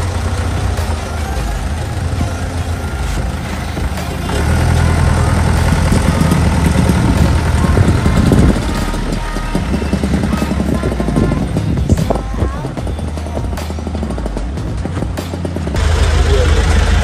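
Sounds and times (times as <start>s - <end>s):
truck engine rumbling: 0.0s - 17.0s.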